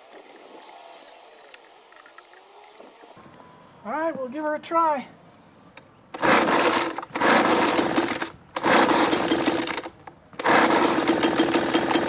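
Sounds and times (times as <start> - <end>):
leaf blower engine sputtering: 6.2 - 12.0.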